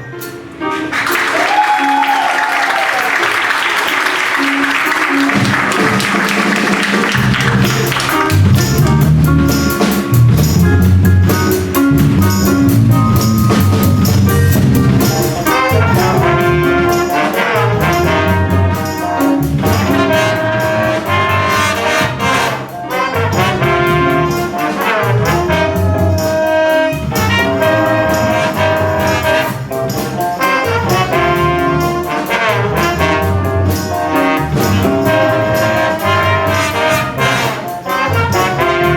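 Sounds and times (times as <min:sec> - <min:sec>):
trumpets and trombones: 0:00.0 - 0:11.1, 0:11.9 - 0:38.9
drum kit: 0:00.0 - 0:38.9
applause: 0:00.8 - 0:08.7
bass line: 0:04.4 - 0:38.9.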